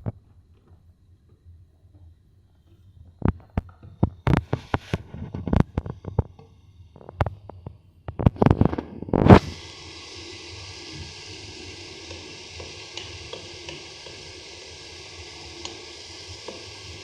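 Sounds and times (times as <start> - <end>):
rushing steady hiss: 9.2 - 17.0.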